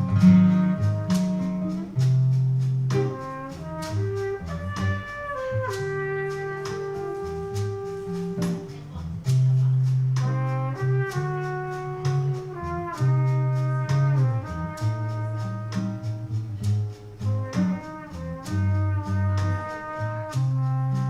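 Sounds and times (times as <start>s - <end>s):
trumpet solo: 0.0s - 8.8s, 10.2s - 16.6s, 17.2s - 21.0s
light percussion: 0.0s - 21.0s
low guitar notes: 0.0s - 21.0s.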